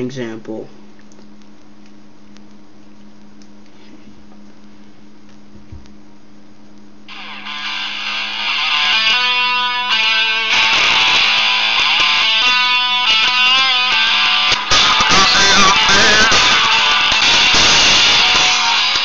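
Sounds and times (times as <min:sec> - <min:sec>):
guitar song through phone speaker: 0:07.1 - 0:19.0.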